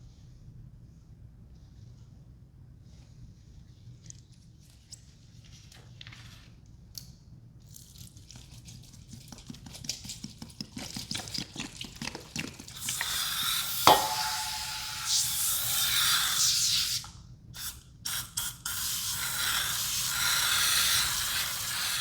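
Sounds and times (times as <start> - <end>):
cleaner being poured: 11.1 - 15.2
hiss: 12.8 - 22.0.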